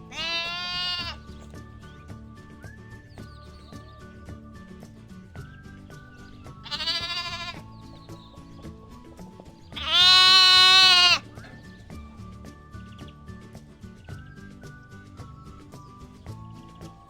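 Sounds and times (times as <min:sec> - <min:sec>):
lamb bleating: 0:00.0 - 0:01.4, 0:06.5 - 0:08.0, 0:09.7 - 0:11.5
light background music: 0:00.0 - 0:17.0.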